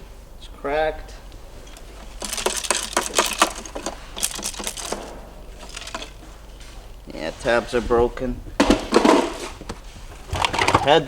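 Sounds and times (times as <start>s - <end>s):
plastic car parts clacking and rattling: 1.6s - 6.4s, 8.5s - 11.0s.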